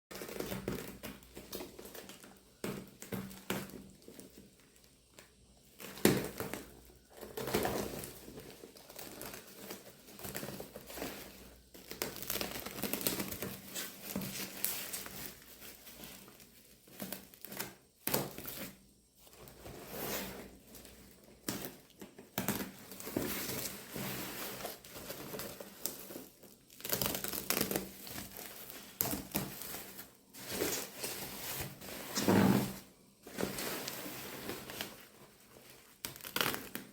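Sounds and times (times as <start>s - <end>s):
packaging crinkling and tearing: 5.8s - 18.8s, 20.8s - 31.8s, 33.3s - 36.9s.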